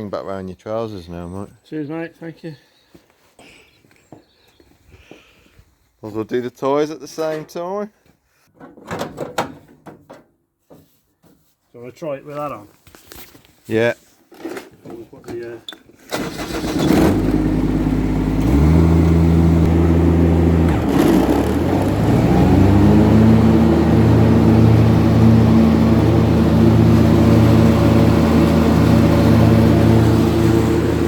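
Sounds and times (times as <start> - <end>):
mower engine starting and running: 16.1 - 31.0.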